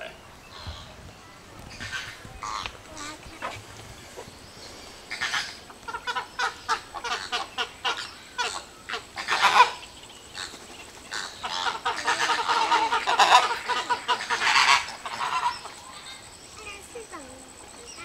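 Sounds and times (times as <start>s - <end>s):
geese honking: 1.7s - 4.2s, 5.0s - 16.8s.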